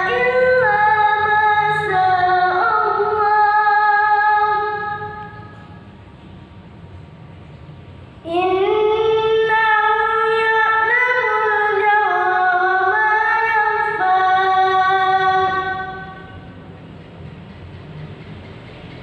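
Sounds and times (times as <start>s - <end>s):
child reciting melodically: 0.0s - 5.3s, 8.3s - 16.3s.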